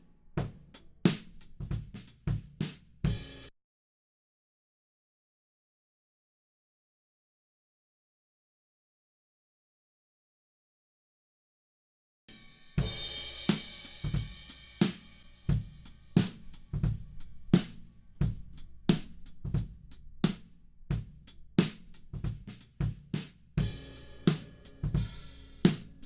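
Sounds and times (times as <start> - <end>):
drum kit groove: 0.0 - 3.5, 12.3 - 26.0.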